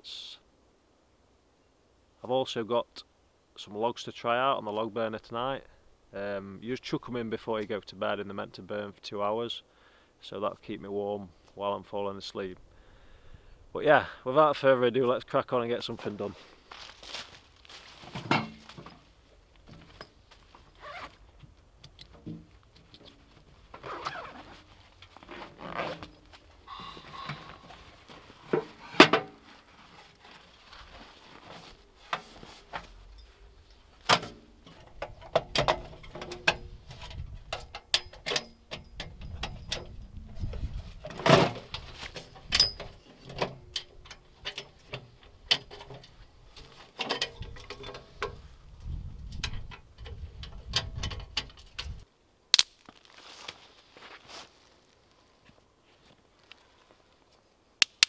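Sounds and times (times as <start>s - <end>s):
camp gear clinking and rustling: 15.9s - 52.1s.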